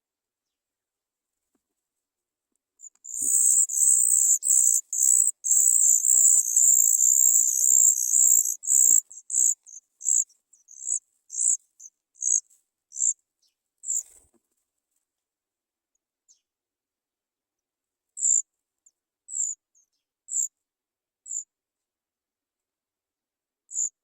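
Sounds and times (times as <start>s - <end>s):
nestlings begging calls: 3.1s - 10.2s.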